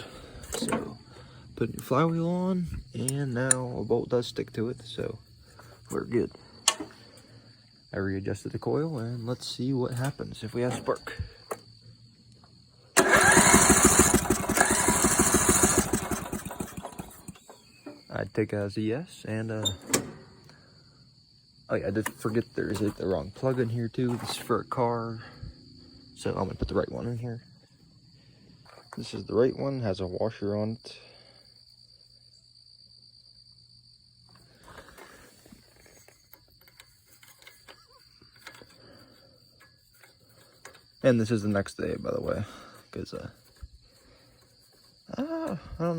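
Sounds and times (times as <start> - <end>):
crickets chirring: 0.0 - 45.9
electric starter cranking engine: 13.0 - 17.6.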